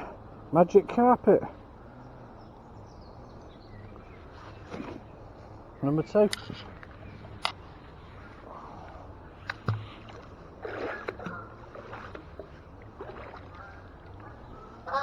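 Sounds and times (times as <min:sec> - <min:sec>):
water splashing and sloshing: 0:03.8 - 0:15.0.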